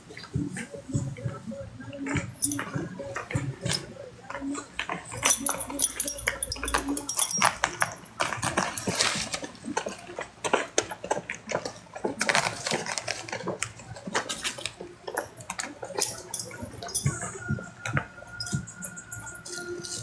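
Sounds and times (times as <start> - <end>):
dogs moving and rustling: 0.1 - 20.0
dog mouth noises: 0.2 - 18.9.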